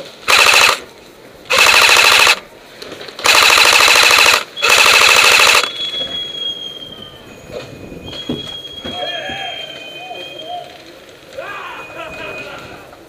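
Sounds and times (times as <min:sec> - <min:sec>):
electric airsoft rifle full-auto bursts: 0:00.2 - 0:00.9, 0:01.5 - 0:02.4, 0:03.2 - 0:05.7.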